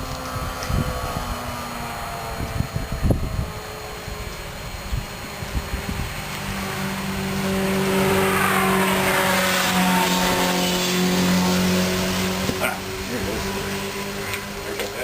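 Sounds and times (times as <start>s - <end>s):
car engine passing by: 6.4s - 14.7s.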